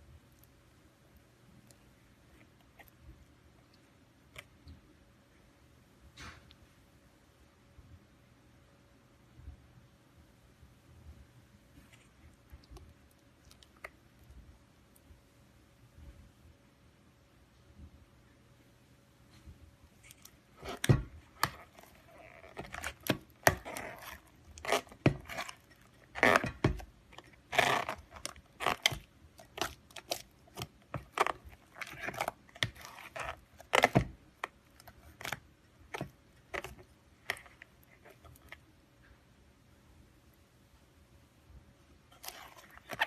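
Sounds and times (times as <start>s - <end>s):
slime popping and crackling: 20.1s - 37.6s.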